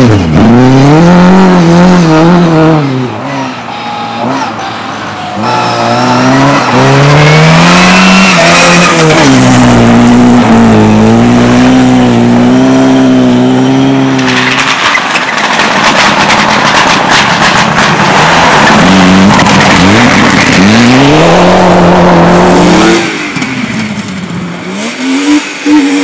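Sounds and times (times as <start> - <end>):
race car engine accelerating: 0.0 - 3.6, 5.4 - 14.4, 18.0 - 26.0
rough crackling noise: 13.8 - 21.4.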